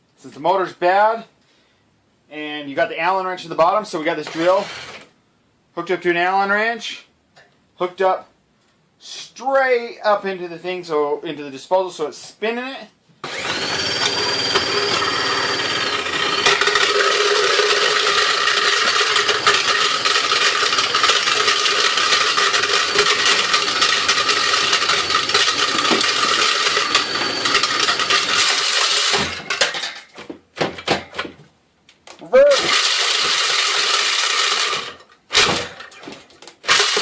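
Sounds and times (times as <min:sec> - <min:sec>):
stones rattling in grinder: 0:04.3 - 0:05.0, 0:13.3 - 0:29.7, 0:32.4 - 0:36.0, 0:36.7 - 0:37.0
drill whine: 0:04.3 - 0:05.1, 0:13.2 - 0:29.4, 0:32.5 - 0:35.6, 0:36.7 - 0:37.0.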